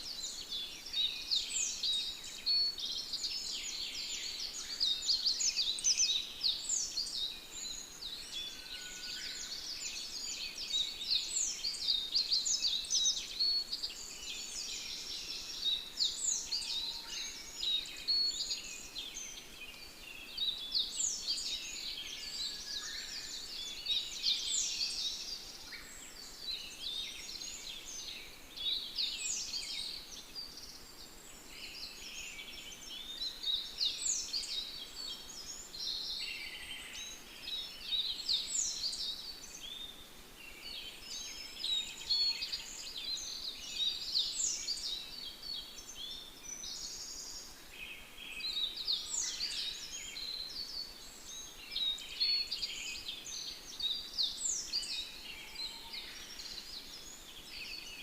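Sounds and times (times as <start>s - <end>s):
birds chirping and singing: 0.0s - 58.0s.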